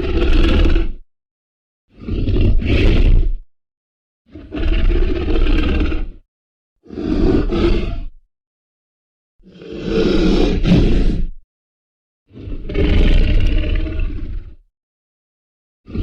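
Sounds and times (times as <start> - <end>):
deep dinosaur roars: 0.0 - 1.0, 1.9 - 3.4, 4.3 - 6.2, 6.8 - 8.2, 9.4 - 11.4, 12.3 - 14.7.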